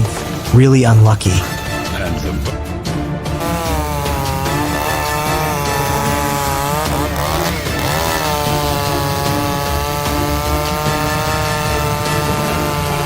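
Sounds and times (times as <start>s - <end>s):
chainsaw engine running at high revs: 3.3s - 13.0s.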